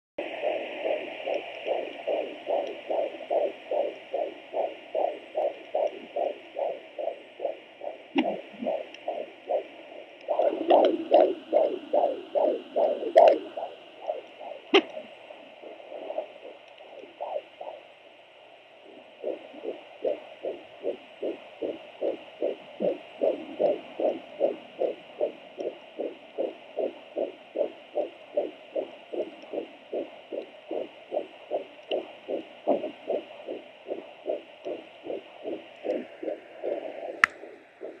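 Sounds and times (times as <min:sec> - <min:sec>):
fetal heartbeat on doppler: 0:00.2 - 0:38.0
sharp click: 0:37.2 - 0:37.4.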